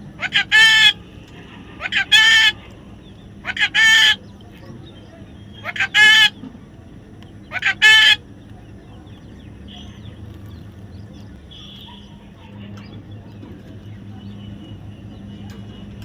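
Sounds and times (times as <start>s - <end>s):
bird chirps: 7.2s - 16.0s.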